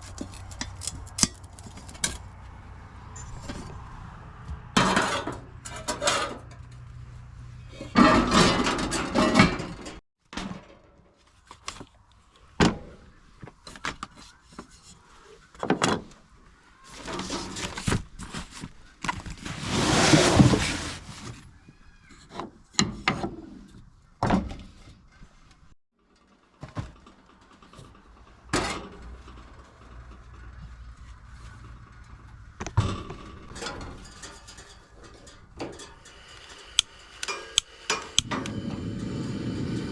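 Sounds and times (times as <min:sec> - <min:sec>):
camp cooking gear clattering: 0:04.7 - 0:06.8, 0:07.7 - 0:12.0, 0:26.3 - 0:38.7
rustling noises: 0:11.0 - 0:22.3.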